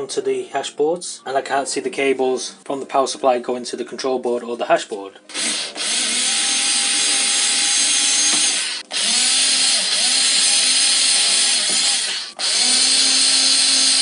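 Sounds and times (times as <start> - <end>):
electric drill-driver running: 5.3 - 14.0.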